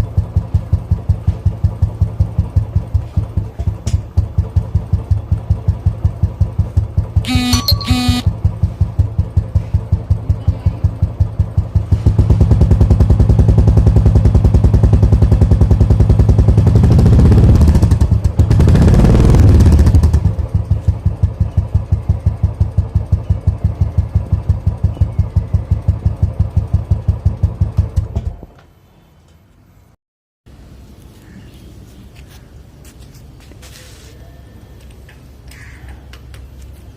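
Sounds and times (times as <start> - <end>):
motorcycle engine idling and revving: 0.0 - 28.6.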